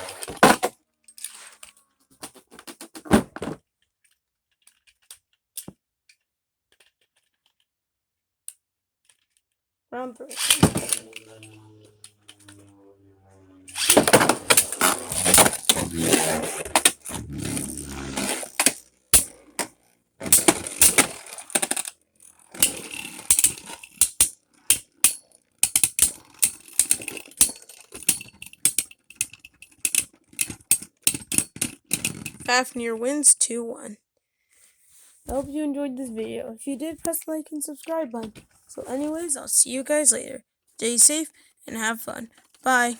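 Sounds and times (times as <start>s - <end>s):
spinning tops clattering in plastic stadium: 13.7s - 32.5s.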